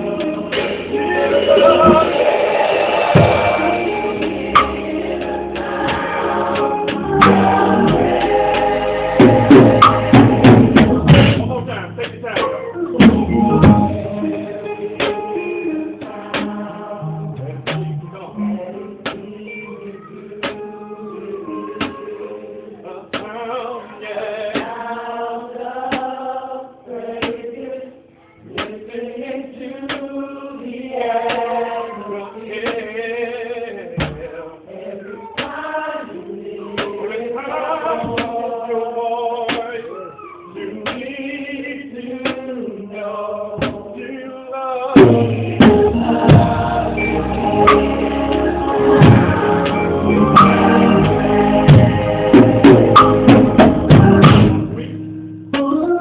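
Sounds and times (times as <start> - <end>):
voices singing together: 0.0 - 11.5, 12.8 - 54.9
sharp percussive hits: 5.6 - 11.6
band with drums and bass: 5.6 - 14.0, 45.0 - 54.9.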